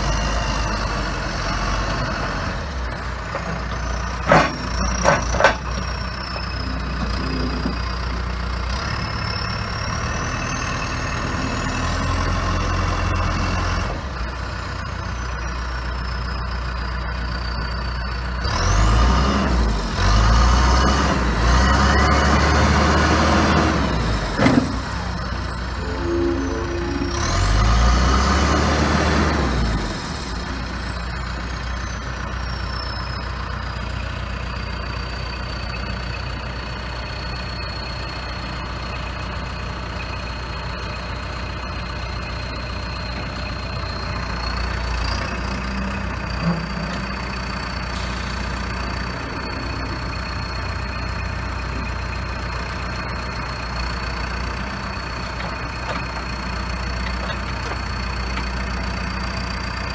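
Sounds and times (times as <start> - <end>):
diesel engine revving and idling: 0.0 - 59.9
high whine: 25.6 - 28.1.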